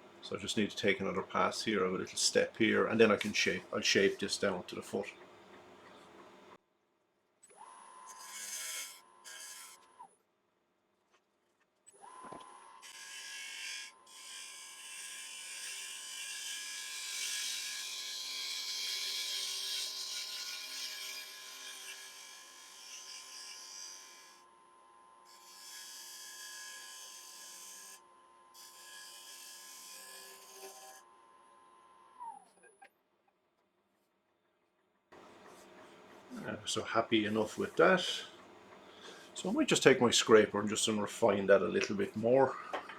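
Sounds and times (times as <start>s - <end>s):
tool cutting wood hiss: 8.0s - 9.8s.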